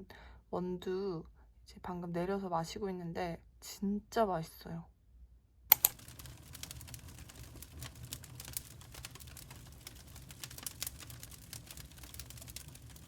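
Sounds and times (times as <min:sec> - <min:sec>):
firewood burning and crackling: 0:05.7 - 0:13.0
fire low rumble: 0:05.9 - 0:13.0.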